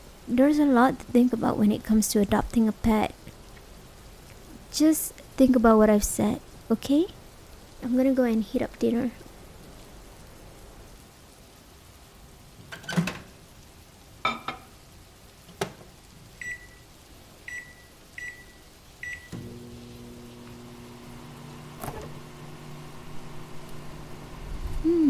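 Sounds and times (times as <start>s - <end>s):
keypad beeps: 16.4s - 16.8s, 17.5s - 19.4s
microwave oven humming: 19.0s - 25.0s.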